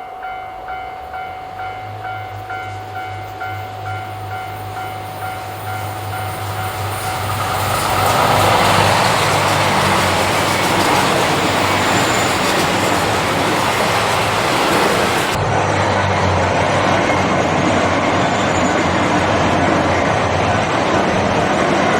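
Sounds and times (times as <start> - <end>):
railway crossing bell ringing: 0.0 - 15.4
diesel train passing: 0.0 - 21.9.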